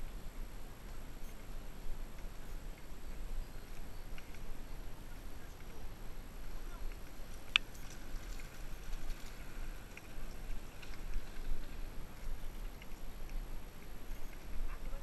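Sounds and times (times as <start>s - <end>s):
bike tires rumbling on dirt: 0.0s - 15.0s
faint thin steady tone: 0.0s - 15.0s
faint ticks: 2.1s - 4.5s, 6.8s - 15.0s.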